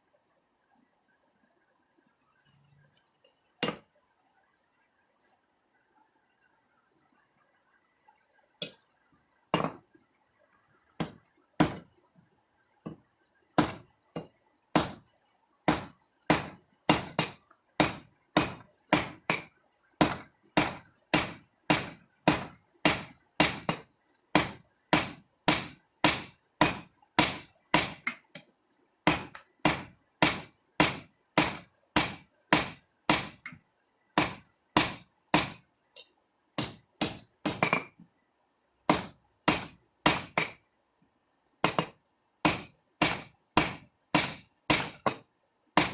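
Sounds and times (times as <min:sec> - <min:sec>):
hammer striking steel on anvil: 0:15.7 - 0:23.8, 0:24.4 - 0:28.1, 0:29.1 - 0:33.4, 0:34.2 - 0:35.6, 0:36.6 - 0:37.9, 0:38.9 - 0:40.6, 0:42.5 - 0:45.2.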